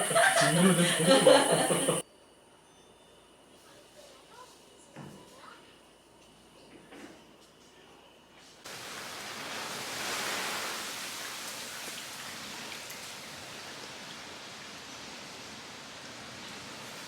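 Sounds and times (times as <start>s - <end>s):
heavy rain: 8.7s - 17.0s.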